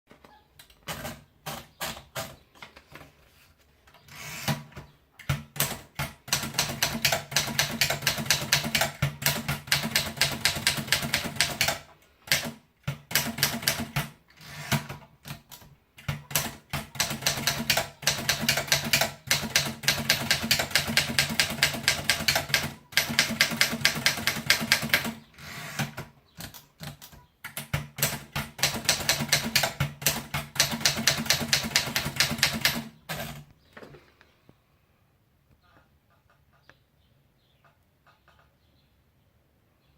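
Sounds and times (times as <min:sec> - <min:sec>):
typewriter keystrokes: 0:04.4 - 0:33.5.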